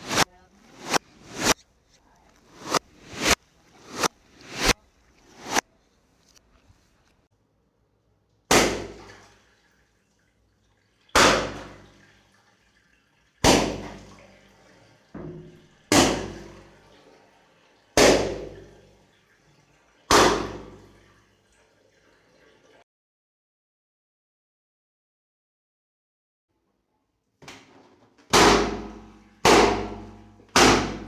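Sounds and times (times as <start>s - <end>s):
water splashing: 0.0s - 7.3s, 8.5s - 22.8s
water balloons popping: 8.5s - 9.3s, 11.1s - 12.0s, 13.4s - 14.2s, 15.2s - 16.8s, 18.0s - 18.8s, 20.1s - 20.9s, 27.4s - 31.0s.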